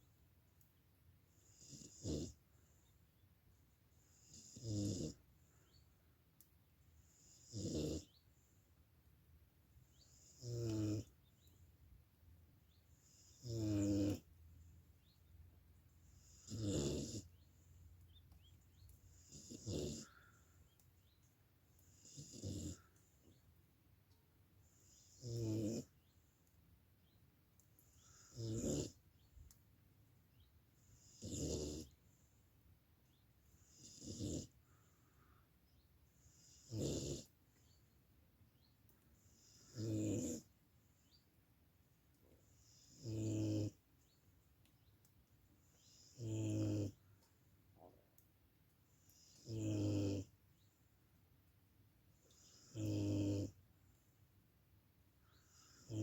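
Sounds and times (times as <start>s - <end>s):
faint breathing hiss: 0.0s - 56.0s
dog snoring: 1.3s - 2.4s, 4.0s - 5.2s, 7.0s - 8.2s, 10.0s - 11.2s, 12.9s - 14.4s, 16.0s - 17.4s, 19.1s - 20.4s, 21.8s - 23.0s, 24.7s - 26.0s, 27.9s - 29.0s, 30.9s - 32.0s, 33.6s - 35.2s, 36.2s - 37.4s, 39.3s - 40.5s, 42.5s - 43.8s, 45.8s - 47.0s, 49.0s - 50.3s, 52.2s - 53.6s, 55.4s - 56.0s.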